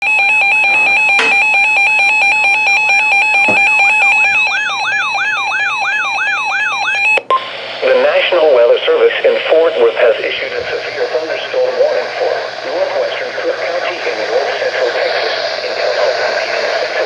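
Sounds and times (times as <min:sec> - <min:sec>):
emergency alert tone: 0:00.0 - 0:16.2
rising siren-like sweep: 0:00.4 - 0:07.2.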